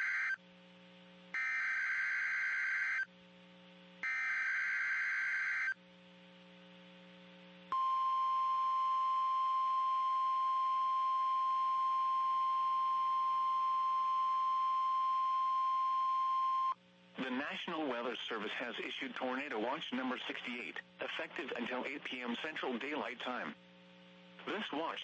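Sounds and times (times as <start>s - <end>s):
steady alarm tone: 0.0s - 0.4s, 1.4s - 3.1s, 4.0s - 5.8s.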